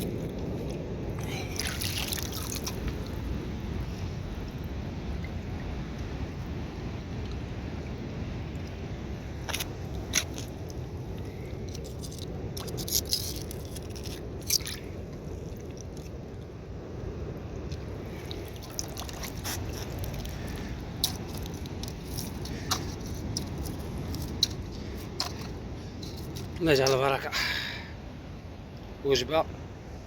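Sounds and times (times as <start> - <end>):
water dripping and sloshing: 0.0 - 7.5, 9.4 - 16.5, 17.6 - 26.7
steady low wash: 0.0 - 12.6.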